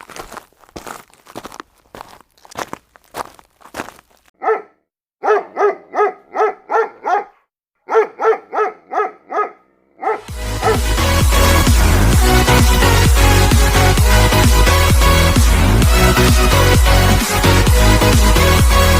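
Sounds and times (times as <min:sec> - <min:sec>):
dog barking: 0:04.4 - 0:10.9
electronic dance music: 0:10.2 - 0:18.9.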